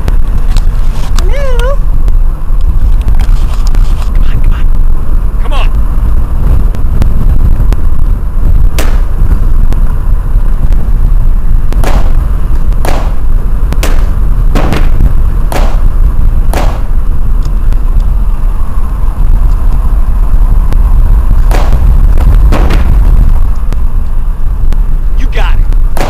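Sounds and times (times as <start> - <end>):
heavy low rumble: 0.0 - 26.0
gunshots: 8.7 - 9.2, 11.8 - 13.2, 13.8 - 15.9, 16.5 - 16.9, 21.4 - 21.9, 22.5 - 23.1.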